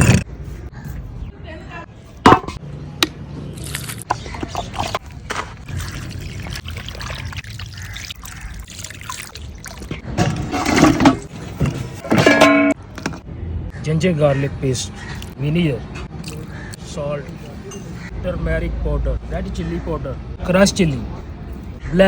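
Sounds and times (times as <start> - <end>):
water pouring and splashing: 3.6 - 12.0.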